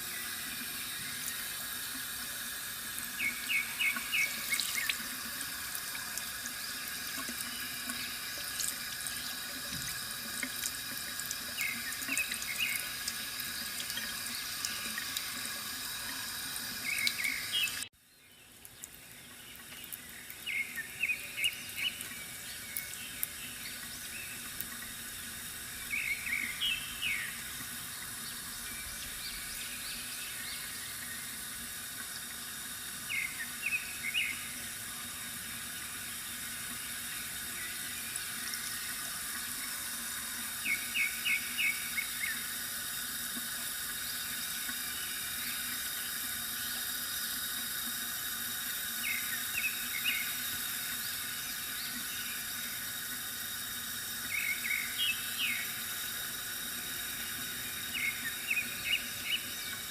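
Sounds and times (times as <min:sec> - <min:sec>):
water trickling from fountain: 0:00.0 - 0:59.9
small birds chirping: 0:03.1 - 0:05.2, 0:11.5 - 0:15.2, 0:16.8 - 0:31.4, 0:33.0 - 0:34.7, 0:40.6 - 0:42.5, 0:49.0 - 0:52.5, 0:54.2 - 0:55.8, 0:57.1 - 0:59.9.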